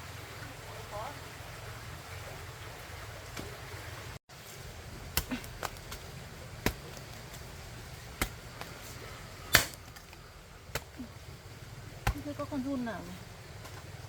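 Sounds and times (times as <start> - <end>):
digging tool chopping into soil: 5.1 - 7.5, 8.1 - 8.8, 9.5 - 11.0, 12.0 - 12.3.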